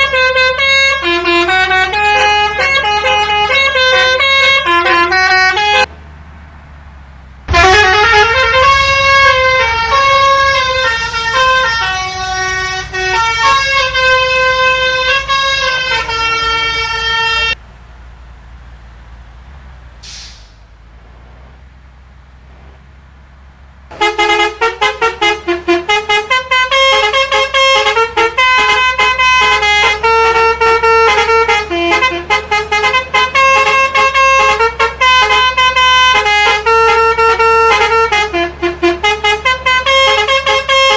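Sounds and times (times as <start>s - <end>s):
multi-tone musical bus horn: 0.0s - 5.9s, 7.5s - 17.6s, 23.9s - 40.9s
low rumble: 6.8s - 18.2s.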